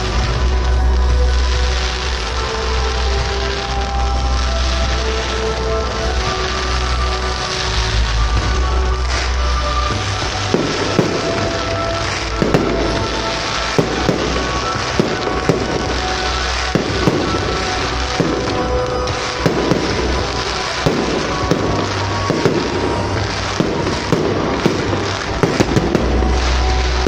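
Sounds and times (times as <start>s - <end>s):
fireworks bursting and crackling: 0.0s - 27.0s
loud music: 0.0s - 27.0s.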